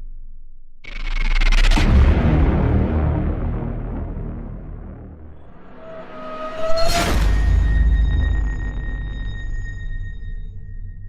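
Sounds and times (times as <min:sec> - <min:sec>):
low rumbling drone: 0:00.0 - 0:11.0
whoosh: 0:04.8 - 0:09.5
rising tone: 0:05.2 - 0:09.8.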